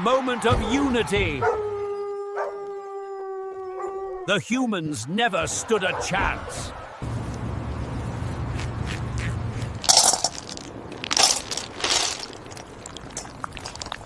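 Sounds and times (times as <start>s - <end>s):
short crunching noises: 8.4s - 14.0s.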